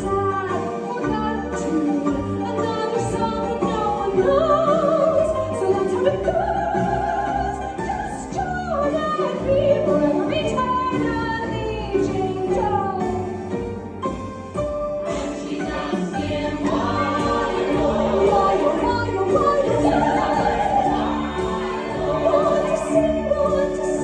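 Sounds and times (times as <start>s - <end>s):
sustained musical accompaniment: 0.0s - 24.0s
operatic voice singing: 15.1s - 24.0s.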